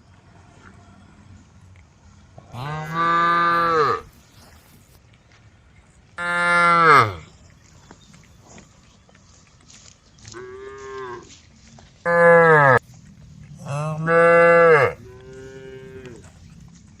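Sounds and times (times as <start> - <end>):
cows mooing: 2.4 - 4.2, 6.2 - 7.3, 12.1 - 16.7.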